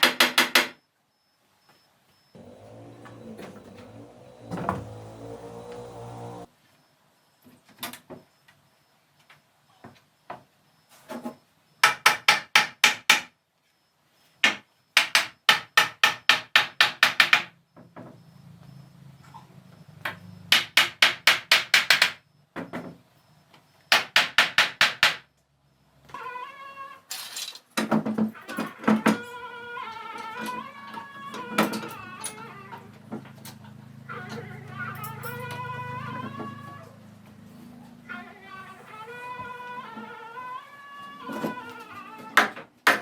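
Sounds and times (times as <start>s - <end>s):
hammer striking wood: 0.0s - 0.8s, 11.8s - 13.3s, 14.4s - 17.5s, 20.5s - 22.2s, 23.9s - 25.2s, 42.4s - 43.0s.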